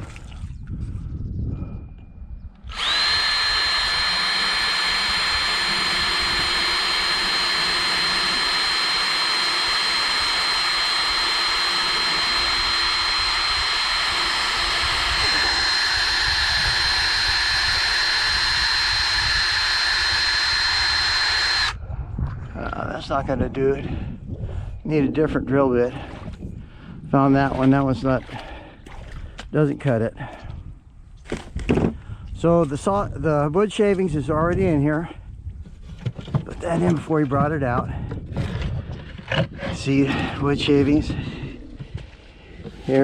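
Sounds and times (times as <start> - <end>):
power drill whining: 2.6 - 21.8.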